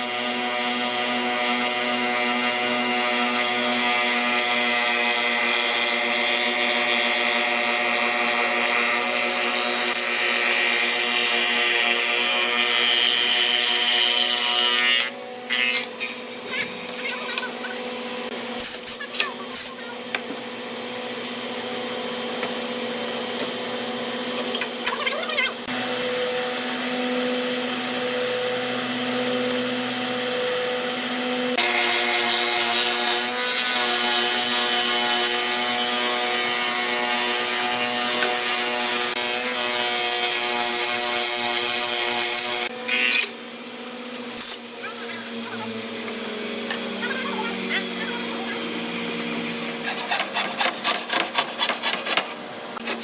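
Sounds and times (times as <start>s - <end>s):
power tool rasping on hardwood: 49.7s - 53.0s.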